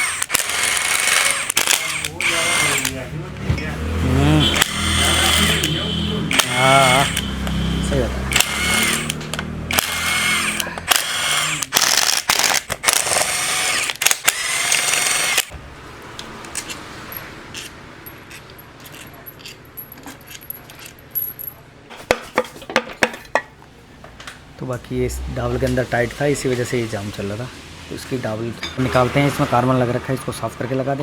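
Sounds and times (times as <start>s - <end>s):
power driver whining: 0.0s - 15.6s
metal parts clicking and tapping: 16.2s - 23.5s.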